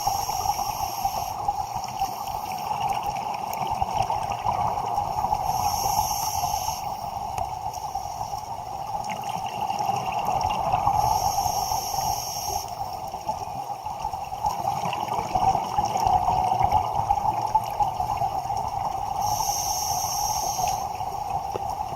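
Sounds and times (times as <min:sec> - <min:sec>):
hissing regulator inhalation: 0:00.0 - 0:01.4, 0:05.4 - 0:07.0, 0:11.0 - 0:12.8, 0:19.2 - 0:21.0
underwater bubbling and gurgling: 0:00.0 - 0:21.9.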